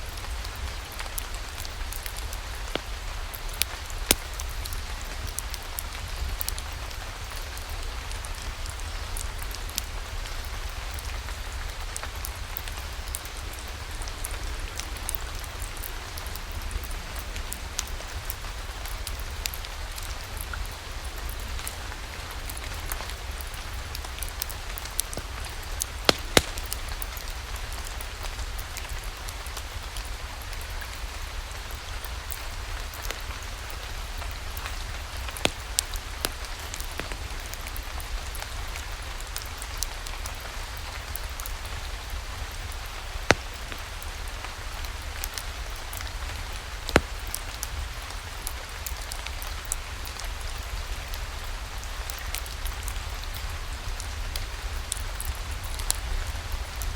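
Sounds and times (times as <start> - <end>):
wood fire crackling: 0.1 - 56.9
rain hissing: 21.5 - 28.0.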